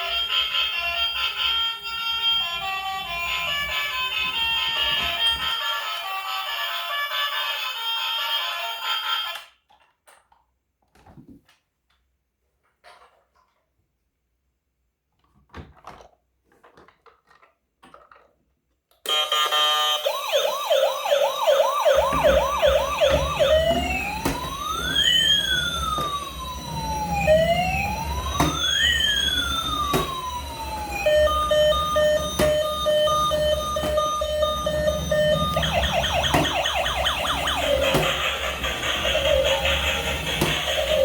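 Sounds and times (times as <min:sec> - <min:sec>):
toy siren yelping and wailing: 0:00.0 - 0:09.4, 0:19.1 - 0:41.0
steady beeping: 0:19.1 - 0:41.0.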